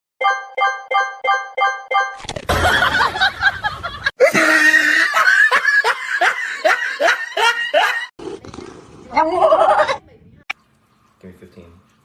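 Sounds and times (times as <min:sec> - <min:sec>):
people laughing: 0:02.5 - 0:08.1.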